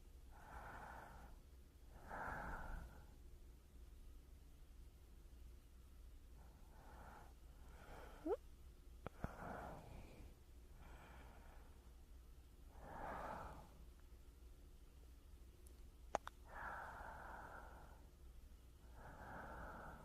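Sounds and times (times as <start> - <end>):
soft slow breathing: 0.0 - 3.4, 6.3 - 14.1, 16.3 - 20.0
lip click: 15.6 - 16.4.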